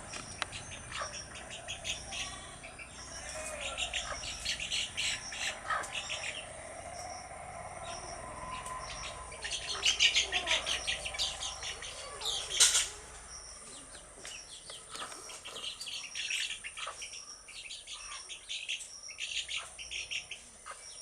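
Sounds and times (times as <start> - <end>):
chicks peeping: 0.0 - 21.0.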